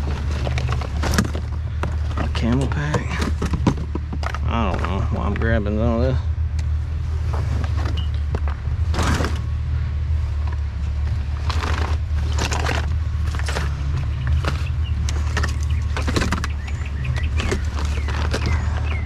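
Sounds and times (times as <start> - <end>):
clothing rustling and crinkling: 0.0 - 4.4, 10.3 - 16.5
steady low hum: 0.0 - 19.0.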